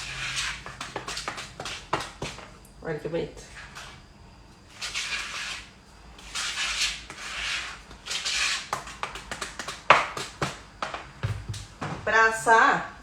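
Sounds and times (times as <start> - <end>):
utensil scraping batter in bowl: 0.0 - 2.5, 4.7 - 10.6.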